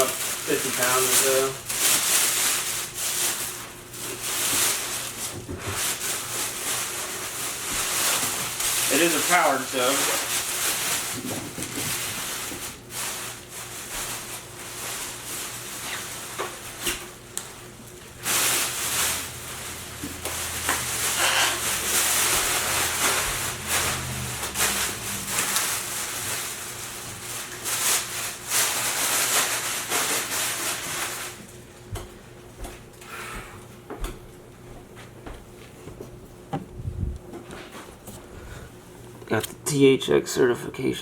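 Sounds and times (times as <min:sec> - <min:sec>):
packaging rustling: 0:00.0 - 0:31.4
low hum: 0:18.7 - 0:27.0.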